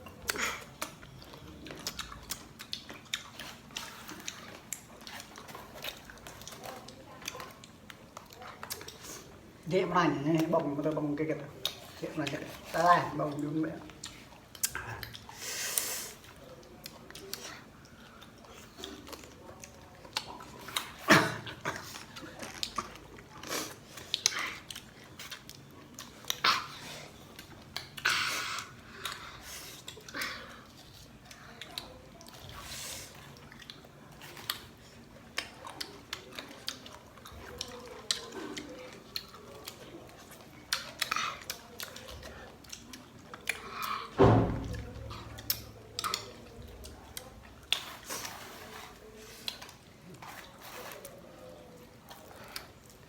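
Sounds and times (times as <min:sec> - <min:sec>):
chewing crisp fruit: 0:00.0 - 0:53.0.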